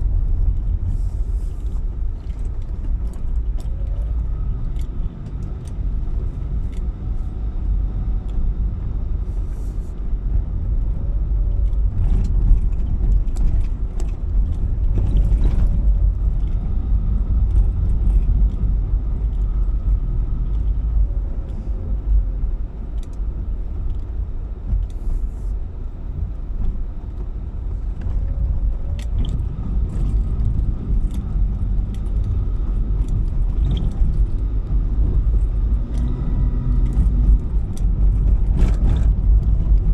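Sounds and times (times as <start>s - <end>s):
car engine and road noise: 0.0s - 39.9s
small clicks and rattles: 11.4s - 22.2s, 26.6s - 39.9s.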